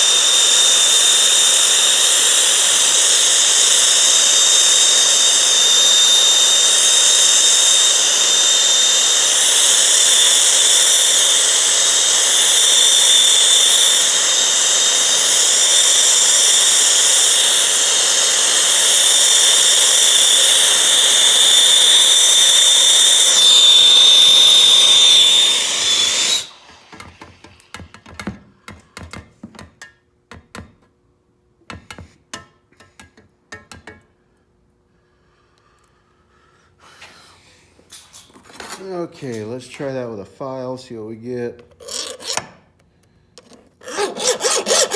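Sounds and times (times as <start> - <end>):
gas torch flame hissing: 0.0 - 27.9.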